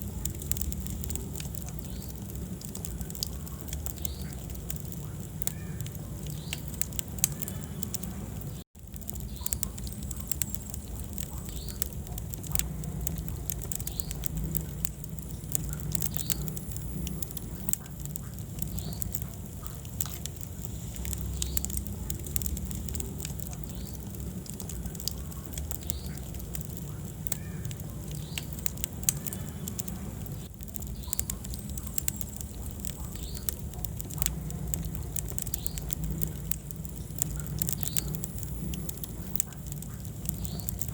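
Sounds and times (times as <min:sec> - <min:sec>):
low rumble of flames: 0:00.0 - 0:40.9
wood fire crackling and popping: 0:00.0 - 0:40.9.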